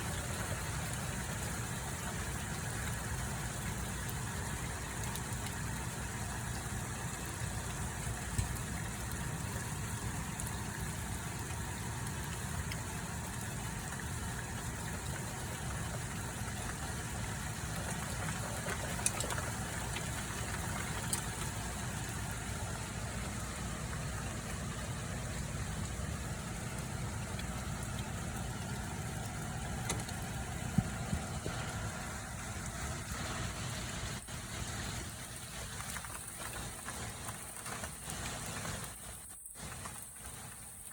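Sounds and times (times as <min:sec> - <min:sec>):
rain and hail storm hiss: 0:00.0 - 0:40.9
hailstones ticking: 0:13.4 - 0:26.0.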